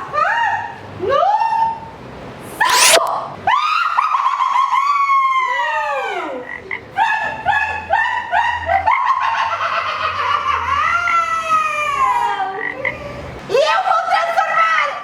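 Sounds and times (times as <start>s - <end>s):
high squeaky calls: 2.6s - 3.0s.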